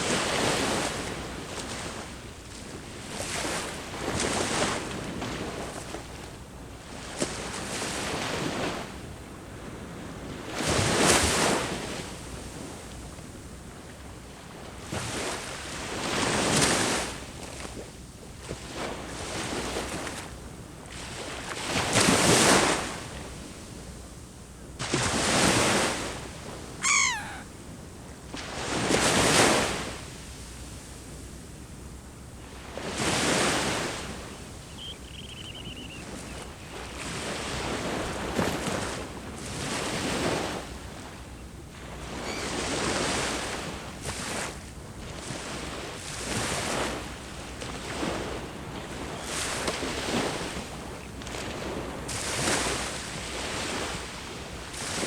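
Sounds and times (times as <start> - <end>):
sea waves breaking on shore: 24.8 - 27.4, 32.5 - 55.0
bird call falling in pitch: 26.8 - 27.5, 34.7 - 36.0.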